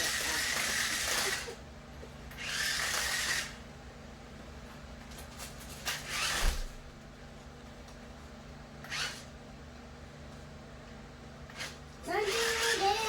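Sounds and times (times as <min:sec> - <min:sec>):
toy car electric motors whirring: 0:00.0 - 0:01.6, 0:02.3 - 0:03.6, 0:05.8 - 0:06.7, 0:08.9 - 0:09.3, 0:11.5 - 0:13.0.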